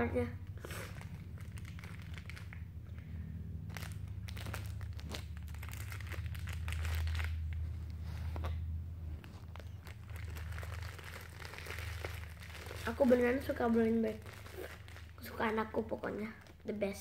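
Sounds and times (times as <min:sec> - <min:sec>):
plastic packaging crinkling: 0:00.4 - 0:03.0, 0:03.6 - 0:17.0.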